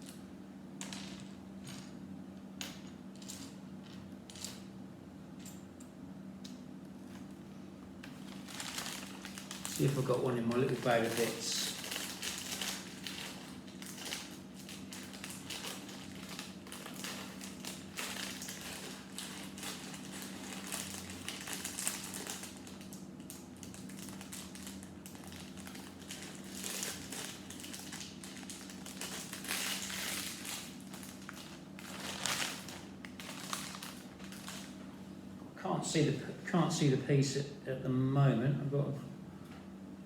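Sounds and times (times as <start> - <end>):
steady low hum: 0.0 - 40.0
plastic bag crinkling: 8.0 - 34.9.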